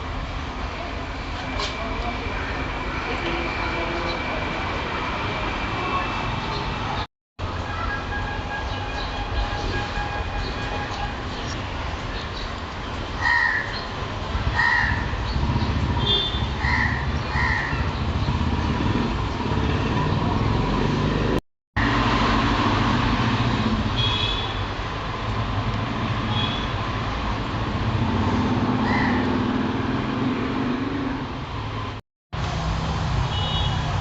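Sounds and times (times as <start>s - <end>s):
crows cawing: 13.2s - 13.8s, 14.6s - 15.1s, 16.6s - 17.8s, 28.8s - 29.3s.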